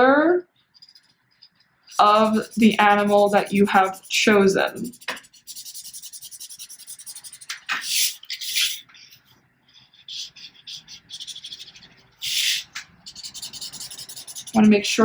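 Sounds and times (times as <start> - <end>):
marker scribbling on paper: 0.8 - 15.0.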